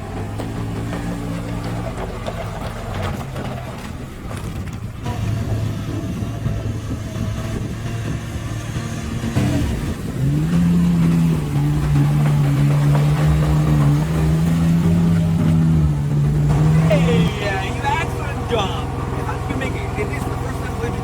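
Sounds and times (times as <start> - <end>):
vehicle engine revving: 0.0 - 21.0.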